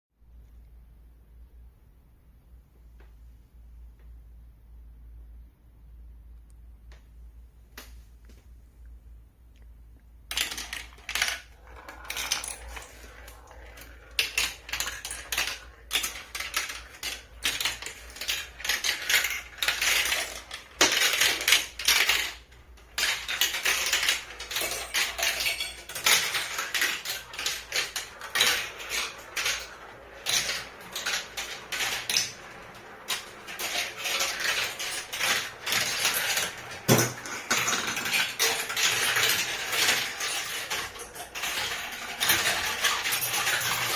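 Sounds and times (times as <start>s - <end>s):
marbles rolling through plastic tracks: 10.2s - 43.9s
marbles clicking: 10.3s - 43.9s.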